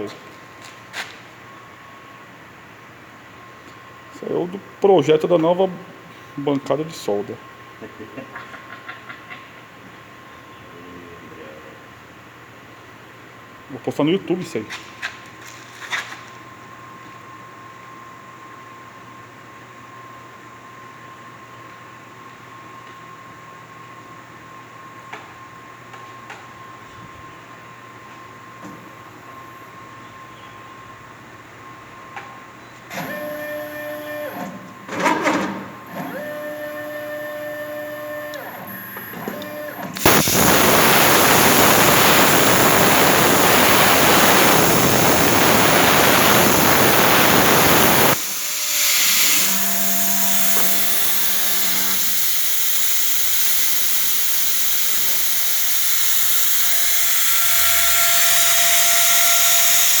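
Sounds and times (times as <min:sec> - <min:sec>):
machine whining tones: 0:35.9 - 1:00.0
plasma cutter hissing: 0:40.0 - 1:00.0.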